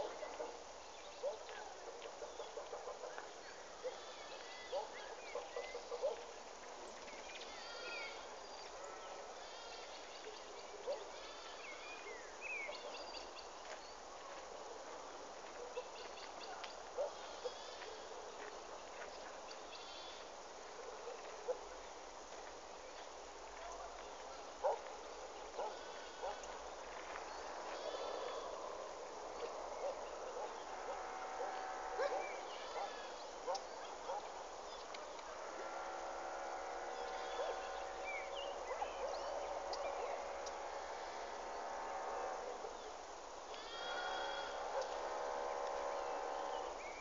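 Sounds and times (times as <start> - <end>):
small birds chirping: 0.0 - 20.4, 21.0 - 35.3
outdoor background hiss: 0.0 - 47.0.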